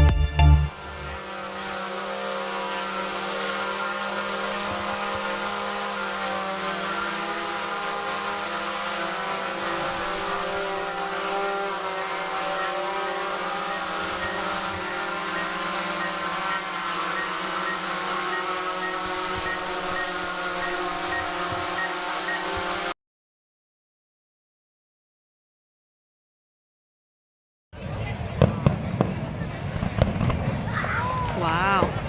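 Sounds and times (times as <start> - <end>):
drone propellers whirring: 0.6 - 23.0.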